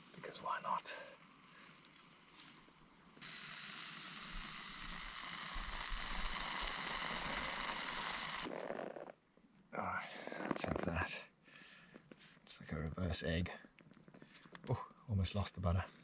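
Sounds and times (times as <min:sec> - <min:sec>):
mushrooms sizzling over a fire: 0:00.0 - 0:08.5.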